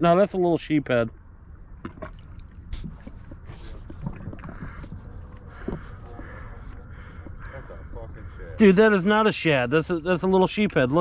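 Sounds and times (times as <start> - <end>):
water splashing and trickling: 1.6 - 8.2.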